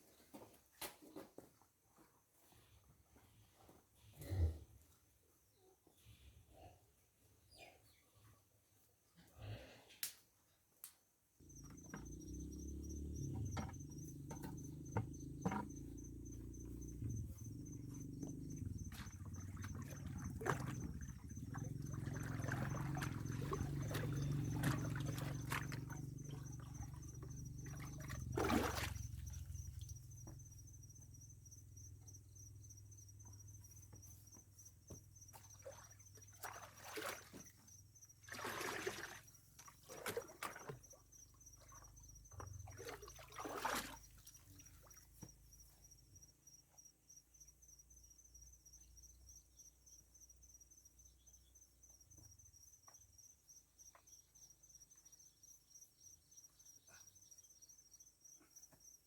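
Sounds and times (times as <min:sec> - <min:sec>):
insects chirping: 0:11.4 - 0:59.0.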